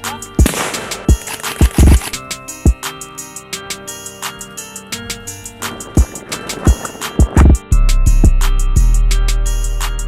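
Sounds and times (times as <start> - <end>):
music with heavy bass beat: 0.0 - 2.9, 5.0 - 10.0.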